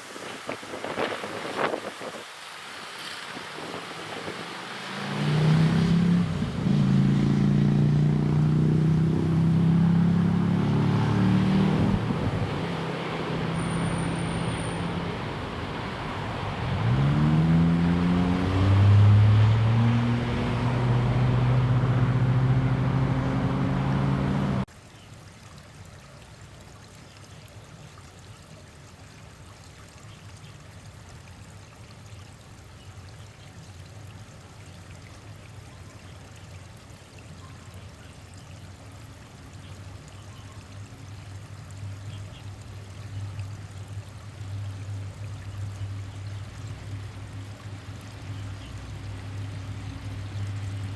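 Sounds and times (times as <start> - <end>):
vehicle engine accelerating: 4.8 - 24.7.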